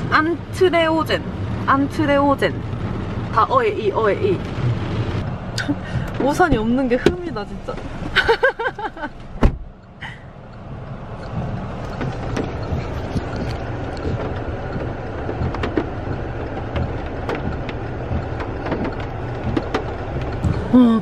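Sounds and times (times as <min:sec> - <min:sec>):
low rumble: 0:00.0 - 0:21.0
raindrops tapping: 0:10.9 - 0:20.8.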